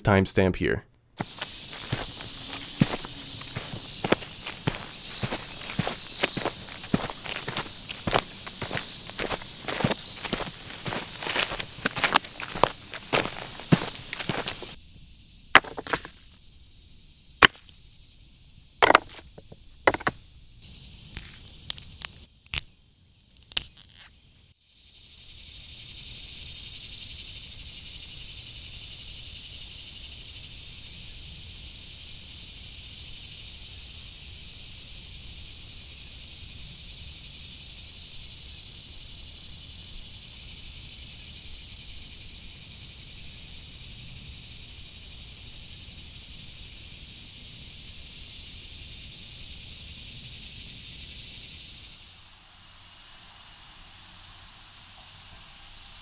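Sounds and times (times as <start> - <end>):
steady high-pitched hiss: 0.0 - 56.0
sharp snaps and knocks: 21.0 - 24.1.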